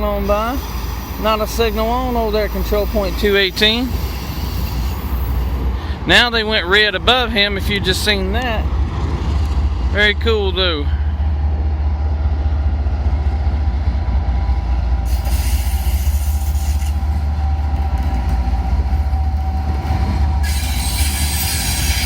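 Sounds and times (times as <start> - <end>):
freight train rumbling: 0.0 - 22.0
wheel squeal: 20.4 - 22.0.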